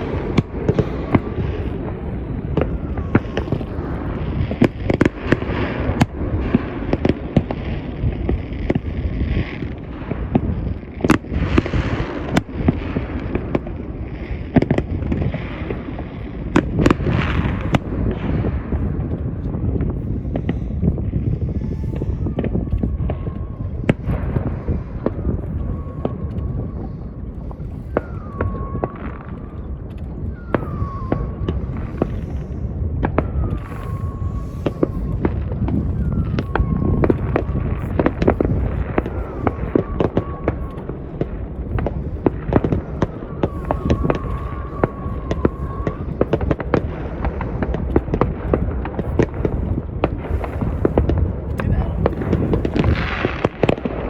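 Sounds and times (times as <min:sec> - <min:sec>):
crackling pops: 0:00.0 - 0:54.0
distant fireworks bangs: 0:00.0 - 0:54.0
low rumble: 0:00.0 - 0:54.0
whistle-like tone: 0:25.5 - 0:32.5, 0:33.2 - 0:41.2.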